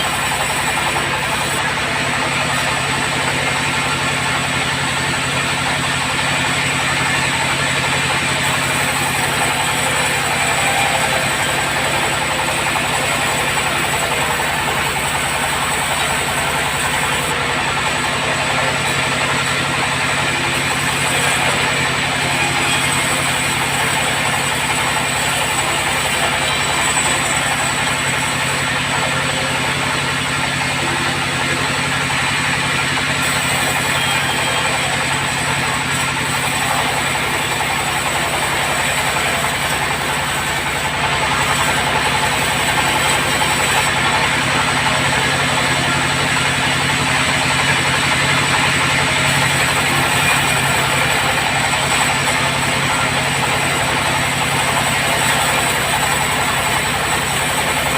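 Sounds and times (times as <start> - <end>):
bandsaw running: 0.0 - 57.9.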